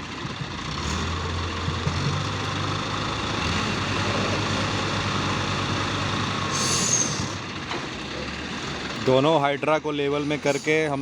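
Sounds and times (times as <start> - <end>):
crane diesel engine humming: 0.0 - 10.5.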